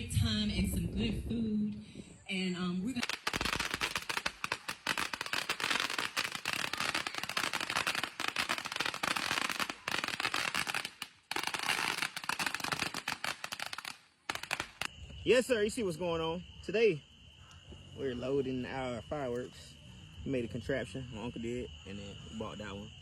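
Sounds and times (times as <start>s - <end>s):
fireworks crackling: 2.8s - 15.0s.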